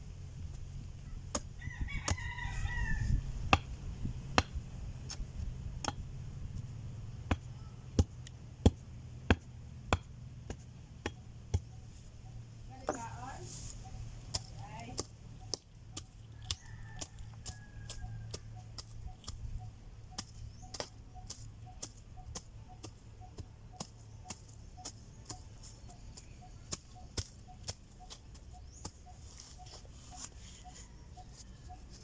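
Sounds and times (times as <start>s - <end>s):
sharp ticking clicks: 14.3s - 29.2s.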